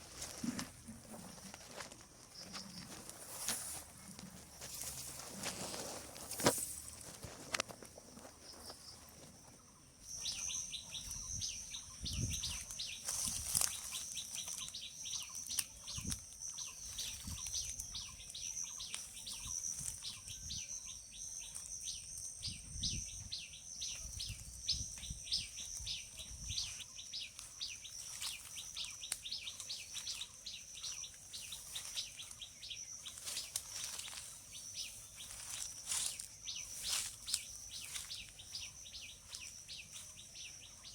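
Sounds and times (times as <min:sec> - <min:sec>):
rapid high-pitched chirping: 0:10.0 - 0:40.9
low wind rumbles on microphone: 0:11.1 - 0:13.6, 0:22.4 - 0:23.4.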